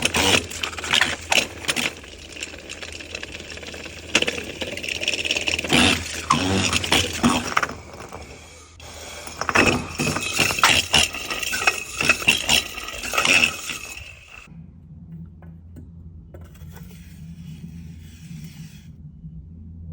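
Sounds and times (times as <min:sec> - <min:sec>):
metallic clinks and rattling: 0:00.0 - 0:14.5
faint low hum: 0:00.0 - 0:19.9.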